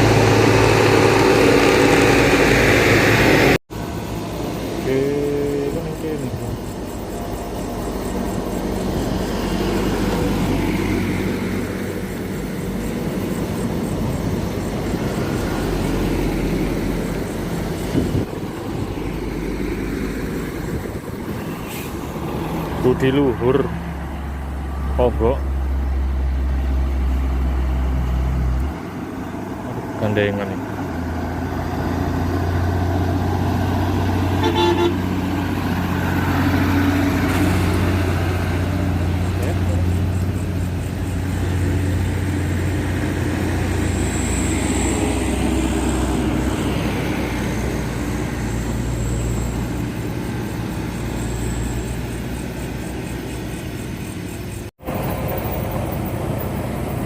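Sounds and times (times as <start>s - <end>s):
low engine hum: 0.0s - 57.0s
road traffic passing: 0.0s - 57.0s
vehicle horn toot: 34.4s - 35.1s.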